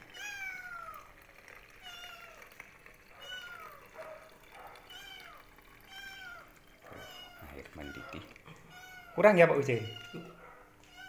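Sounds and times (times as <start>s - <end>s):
boiling water being poured: 0.0s - 9.8s
cat meowing: 4.9s - 11.0s.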